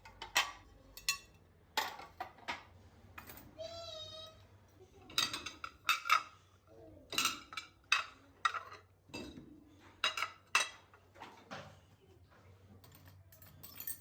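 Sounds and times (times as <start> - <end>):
dishes and cutlery clinking: 0.0 - 3.6, 5.0 - 6.4, 7.1 - 11.8, 12.8 - 14.0.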